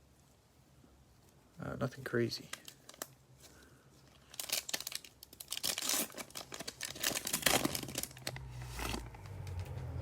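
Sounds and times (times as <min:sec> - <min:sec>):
foil wrapper tearing and crinkling: 0:02.3 - 0:03.2, 0:04.2 - 0:09.1.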